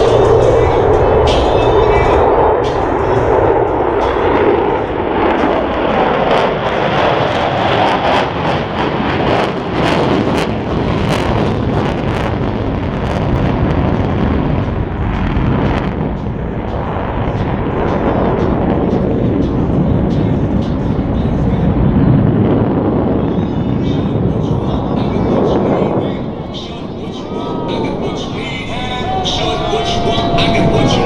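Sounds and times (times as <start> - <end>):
jets roaring past: 0.0 - 13.6, 22.9 - 31.0.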